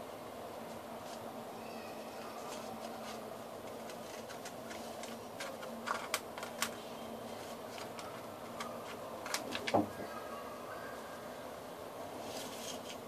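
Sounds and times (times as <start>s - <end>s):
faint steady hum: 0.0s - 13.0s
paper being handled: 2.2s - 9.9s, 12.2s - 13.0s.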